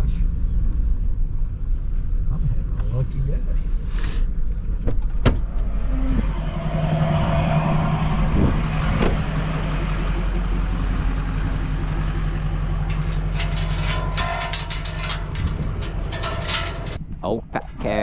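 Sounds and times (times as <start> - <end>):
vehicle engine running: 5.4 - 17.0
clicks and rattles: 12.9 - 17.0.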